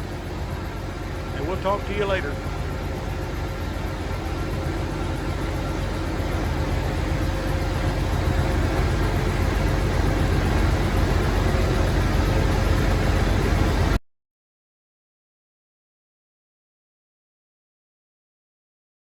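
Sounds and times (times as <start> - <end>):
tractor diesel engine rumbling: 0.0 - 13.9.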